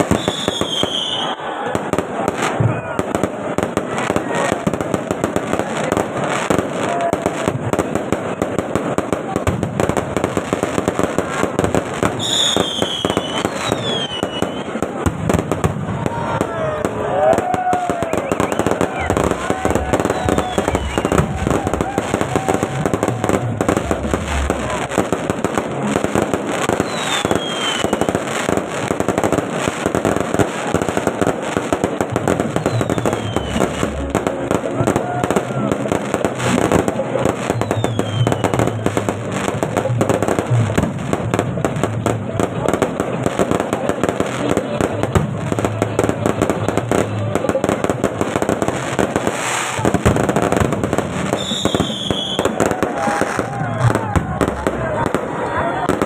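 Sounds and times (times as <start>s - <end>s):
falling firework whistle: 0.0s - 1.9s, 12.2s - 14.8s, 17.1s - 23.3s, 26.7s - 28.5s, 32.5s - 33.9s, 37.5s - 39.0s, 51.2s - 54.6s
fireworks bangs and crackles: 0.0s - 56.0s.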